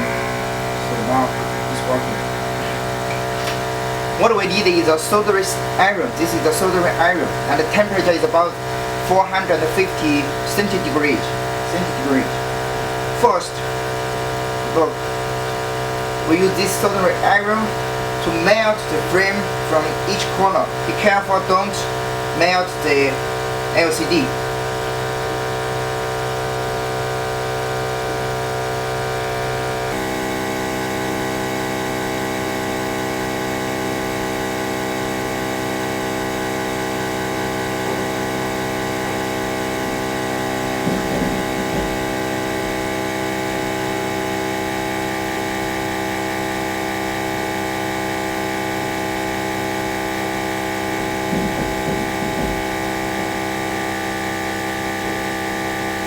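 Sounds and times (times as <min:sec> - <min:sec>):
low thumps: 0:00.0 - 0:04.2, 0:39.8 - 0:43.6, 0:51.0 - 0:53.8
vacuum pump humming: 0:00.0 - 0:56.0.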